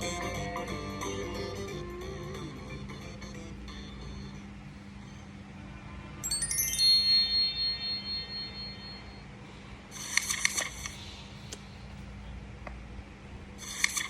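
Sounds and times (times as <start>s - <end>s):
bell-like chime notes: 6.2s - 9.3s.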